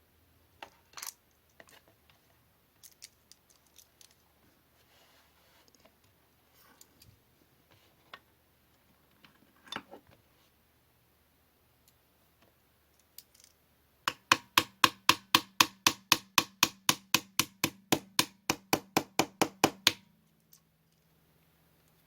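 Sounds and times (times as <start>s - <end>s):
faint steady hum: 0.0s - 22.0s
small hammer tapping: 14.1s - 20.0s.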